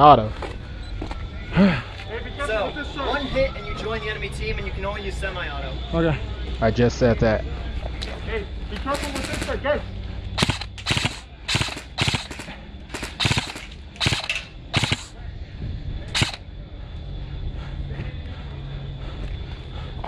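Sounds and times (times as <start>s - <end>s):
airsoft guns firing bursts: 8.8s - 9.6s, 10.4s - 15.1s, 16.1s - 16.4s.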